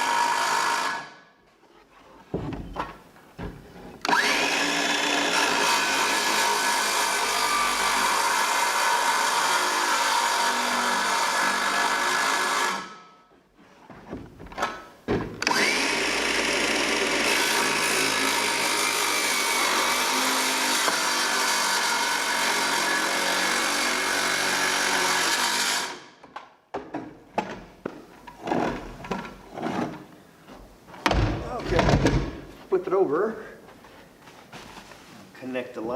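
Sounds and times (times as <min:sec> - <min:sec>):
power tool motor whining: 0:04.0 - 0:12.9, 0:15.4 - 0:26.0.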